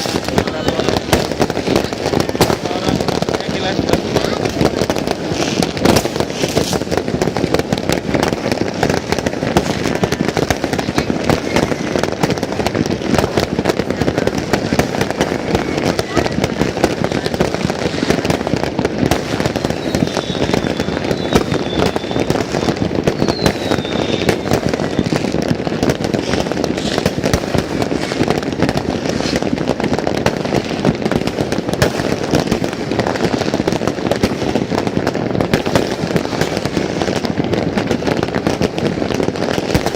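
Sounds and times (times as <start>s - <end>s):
firecrackers crackling and popping: 0.0s - 39.9s
faint high whistles: 19.8s - 22.3s, 23.1s - 25.0s.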